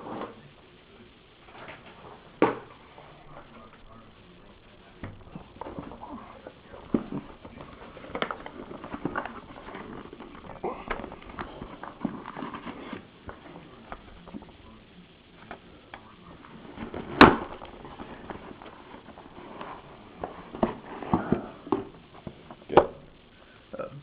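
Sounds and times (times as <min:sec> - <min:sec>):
card sleeves and paper rustling: 0:02.8 - 0:14.7, 0:15.4 - 0:22.6.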